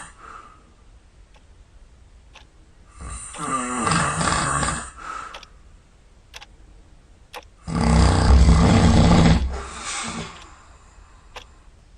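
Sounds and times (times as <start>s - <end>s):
faint ticks: 2.3s - 2.6s, 3.3s - 3.6s, 5.3s - 5.6s, 6.3s - 6.6s, 7.3s - 7.6s, 10.3s - 10.6s, 11.3s - 11.6s
loud snoring: 7.6s - 9.6s.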